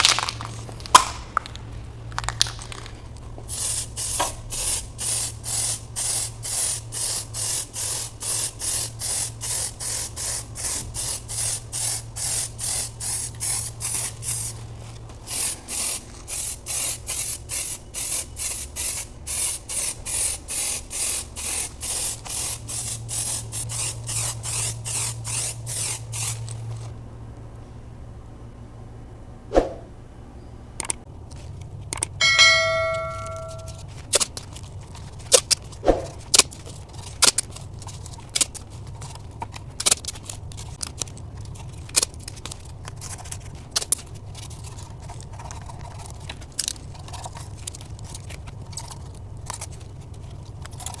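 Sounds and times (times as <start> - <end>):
spray nozzle squirting bursts: 3.5 - 14.6, 15.2 - 26.6.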